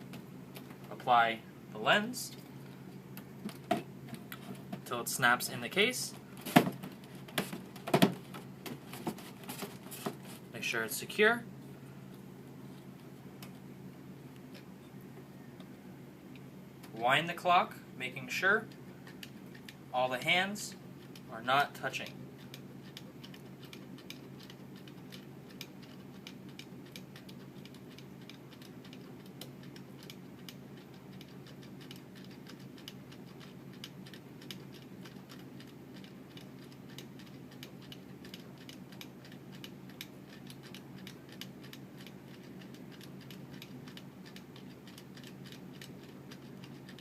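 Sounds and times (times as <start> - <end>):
wall clock ticking: 22.9 - 47.0.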